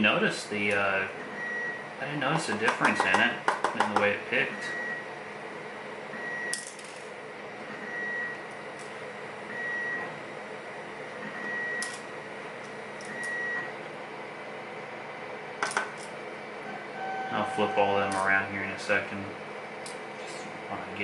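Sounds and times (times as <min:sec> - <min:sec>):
high electronic beep: 0:16.7 - 0:18.3.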